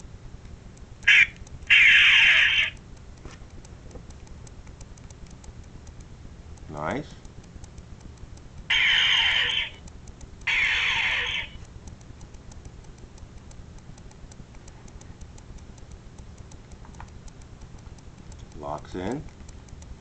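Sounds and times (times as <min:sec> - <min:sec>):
faint steady ticking: 0:00.0 - 0:20.0
electronic phaser zap: 0:01.1 - 0:02.8, 0:08.7 - 0:09.8, 0:10.5 - 0:11.6.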